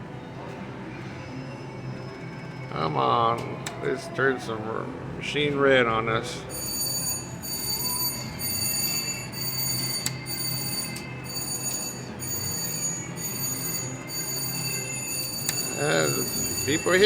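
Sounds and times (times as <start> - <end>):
slot machines chiming and ringing: 6.5 - 17.0.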